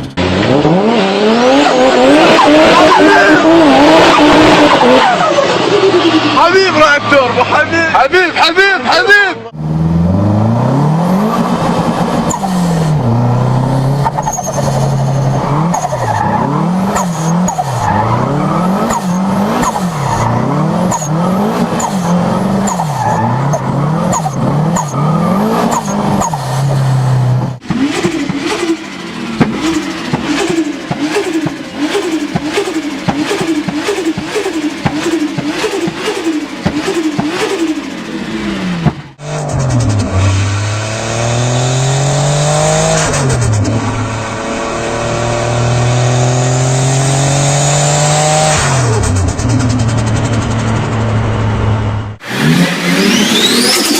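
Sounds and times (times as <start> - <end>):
turbocharged car engine revving: 0.0 - 53.9.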